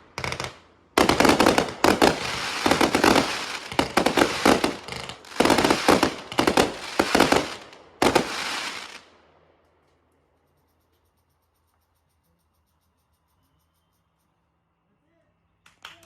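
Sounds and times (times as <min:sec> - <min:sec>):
fireworks banging and crackling: 0:00.0 - 0:09.1.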